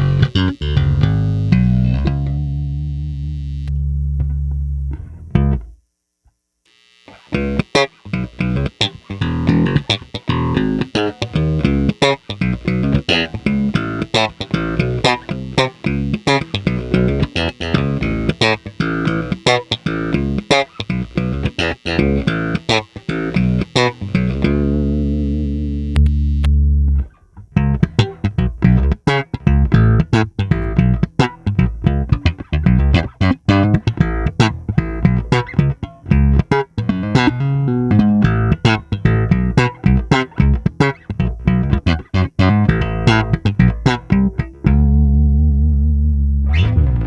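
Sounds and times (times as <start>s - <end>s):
electric bass playing: 0.0s - 5.8s, 7.1s - 47.0s.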